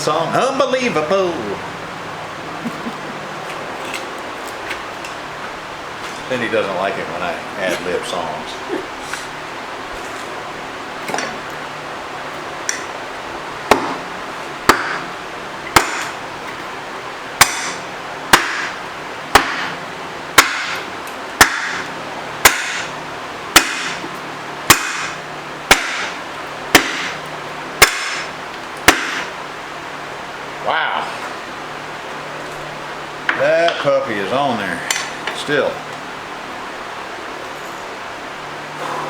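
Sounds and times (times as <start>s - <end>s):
sledgehammer striking metal: 13.7s - 14.1s, 14.7s - 15.1s, 15.8s - 16.2s, 17.4s - 19.8s, 20.4s - 20.8s, 21.4s - 22.9s, 23.6s - 24.0s, 24.7s - 27.2s, 27.8s - 28.3s, 28.9s - 29.3s.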